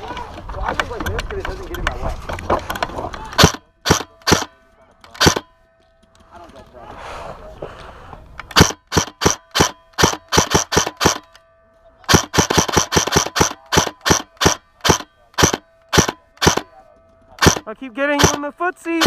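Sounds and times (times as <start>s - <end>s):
airsoft gun shots: 3.4s - 4.5s, 5.2s - 5.5s, 8.5s - 11.3s, 12.1s - 16.7s, 17.4s - 18.5s.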